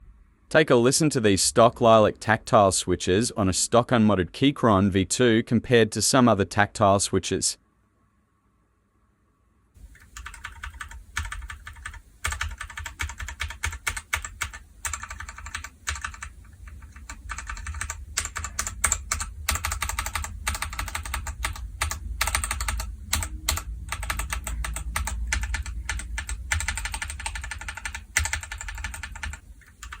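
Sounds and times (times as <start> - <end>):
fast typing on mechanical keyboard: 9.9 - 30.0.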